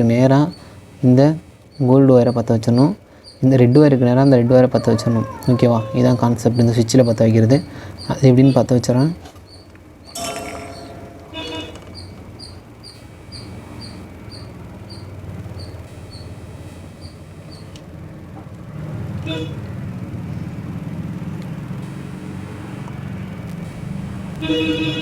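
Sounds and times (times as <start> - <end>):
passing vehicle engine rumble: 0.0 - 25.0
faint high chirps: 9.5 - 17.7.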